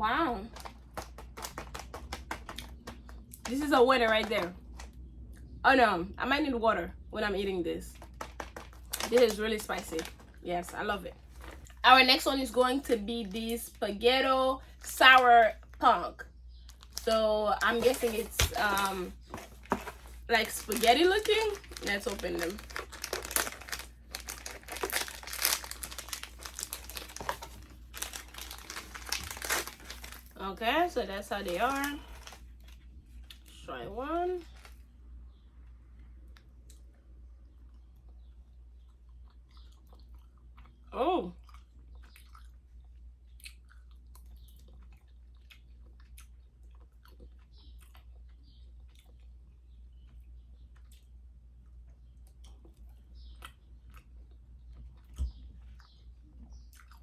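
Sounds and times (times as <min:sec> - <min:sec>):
snack packet crinkling: 0:00.4 - 0:05.0, 0:07.9 - 0:11.8, 0:16.6 - 0:33.5, 0:34.4 - 0:34.9
wet chewing clicks and smacks: 0:35.3 - 0:57.0.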